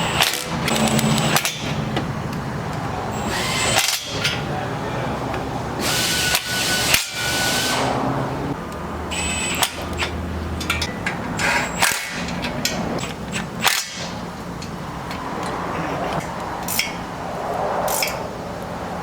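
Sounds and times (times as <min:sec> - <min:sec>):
power tool burst: 0:03.2 - 0:04.2, 0:05.8 - 0:08.0
metal tools clanking: 0:09.6 - 0:17.0.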